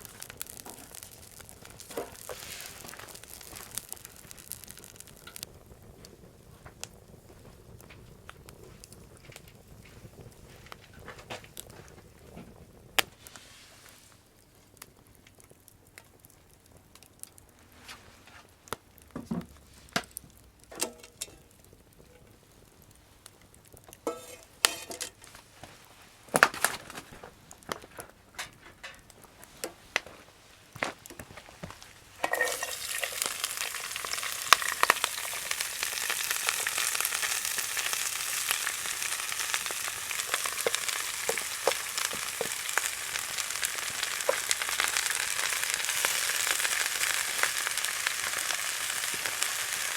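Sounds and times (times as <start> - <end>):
food sizzling in a hot pan: 0.0 - 14.2, 24.0 - 25.3, 32.0 - 49.9.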